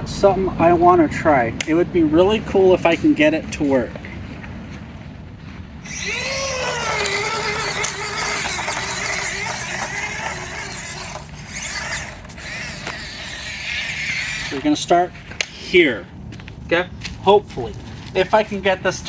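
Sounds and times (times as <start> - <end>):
small electric motor whining: 5.8 - 14.9.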